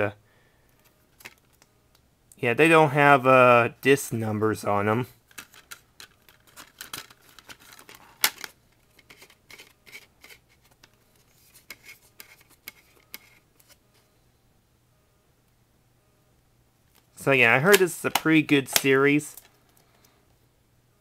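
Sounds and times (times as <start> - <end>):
plastic cases clicking and rattling: 5.3 - 11.0.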